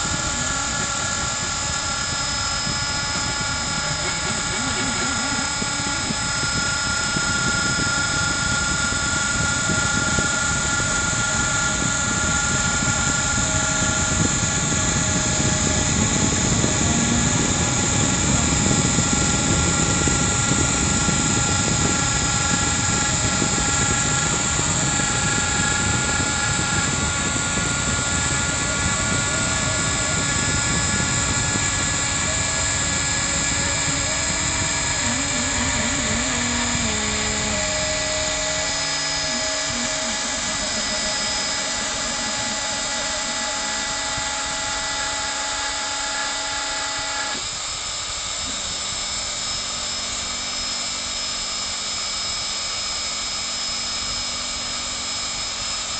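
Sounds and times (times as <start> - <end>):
router spindle whining: 0.0 - 55.9.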